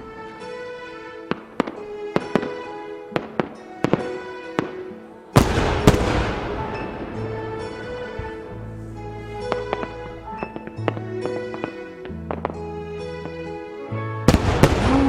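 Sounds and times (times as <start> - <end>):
fireworks crackle: 0.0 - 8.5, 14.3 - 15.0
fireworks bangs: 0.0 - 8.6, 14.3 - 15.0
loud double blast: 5.4 - 8.6, 14.3 - 15.0.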